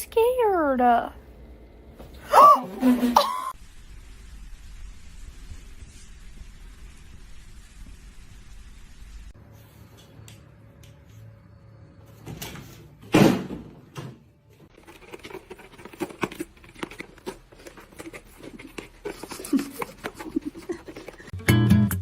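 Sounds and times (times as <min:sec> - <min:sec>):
light tapping and scratching: 0:14.7 - 0:21.4.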